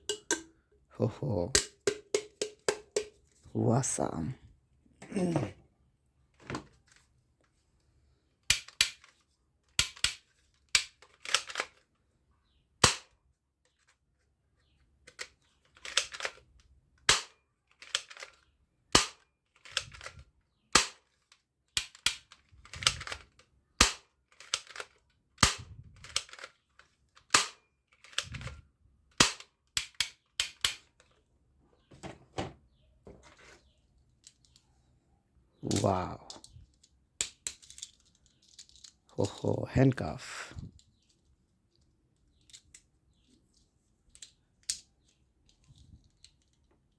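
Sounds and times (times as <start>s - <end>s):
plastic toy gun clicking: 1.6s - 3.2s, 8.4s - 11.8s, 12.8s - 13.2s, 15.1s - 31.2s, 35.7s - 39.0s.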